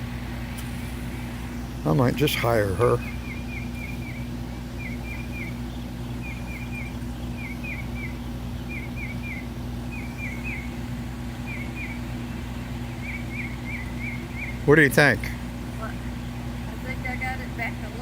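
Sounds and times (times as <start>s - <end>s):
steady low hum: 0.0s - 18.0s
bird chirping: 2.2s - 14.9s.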